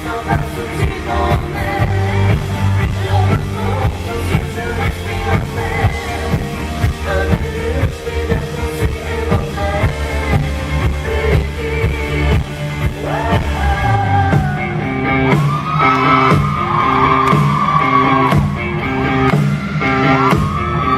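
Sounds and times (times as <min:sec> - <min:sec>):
woman singing: 0:00.0 - 0:14.7
band with drums and bass: 0:00.0 - 0:20.9.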